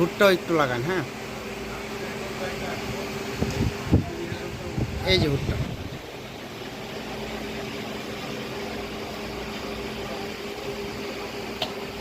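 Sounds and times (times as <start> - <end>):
machinery hum and hiss: 0.0 - 12.0.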